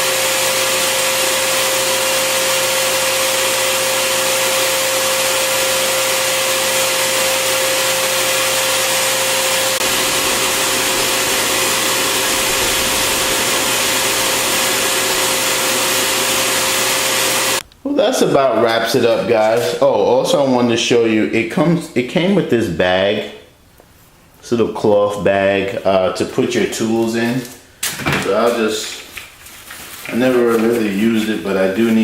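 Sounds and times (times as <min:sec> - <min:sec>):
vacuum blowing air with motor whine: 0:00.0 - 0:17.6.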